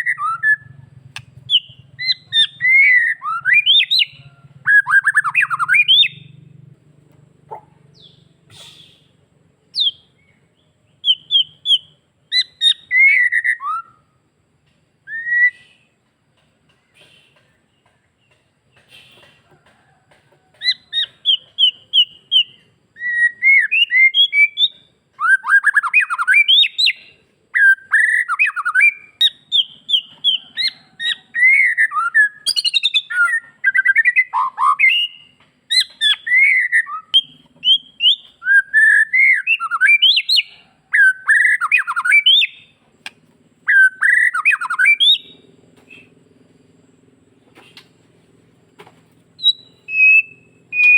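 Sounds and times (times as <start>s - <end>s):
songbird whistling and chirping: 0.0s - 6.4s, 7.5s - 14.2s, 15.0s - 16.0s, 20.5s - 46.2s, 49.4s - 50.9s.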